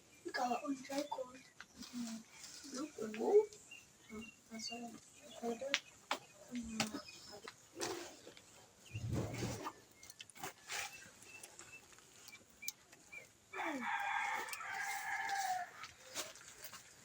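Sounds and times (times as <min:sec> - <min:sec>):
rooster crowing: 0:13.6 - 0:15.9.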